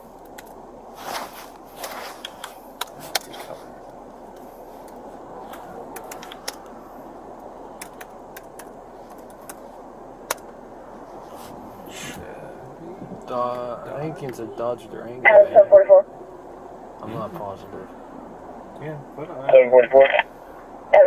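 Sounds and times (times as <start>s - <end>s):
car cabin hum: 0.0s - 21.0s
light clicks and ticks: 4.3s - 6.8s, 7.8s - 9.6s.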